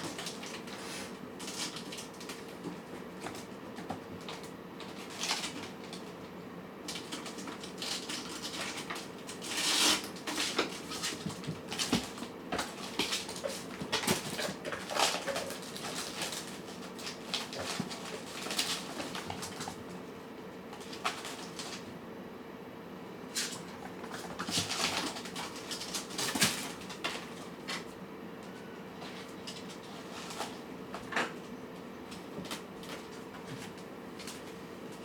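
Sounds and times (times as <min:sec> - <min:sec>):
cats crunching food: 0:00.0 - 0:20.0.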